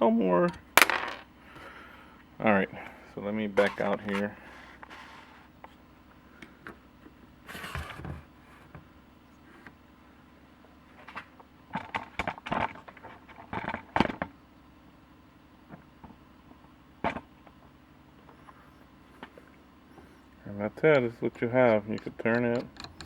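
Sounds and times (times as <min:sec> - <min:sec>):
faint steady hum: 0:00.0 - 0:23.0
metal parts knocking and scraping: 0:03.6 - 0:05.2, 0:20.8 - 0:23.0.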